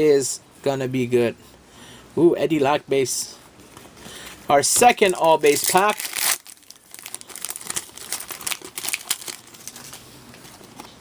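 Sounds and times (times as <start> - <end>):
foil wrapper crinkling: 4.8 - 10.9.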